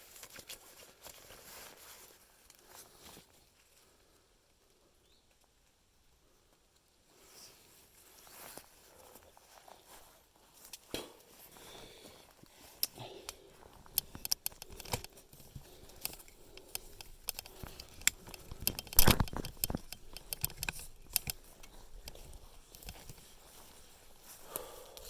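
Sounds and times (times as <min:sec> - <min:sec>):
twigs rustling and snapping: 0:00.0 - 0:03.7, 0:08.2 - 0:25.0.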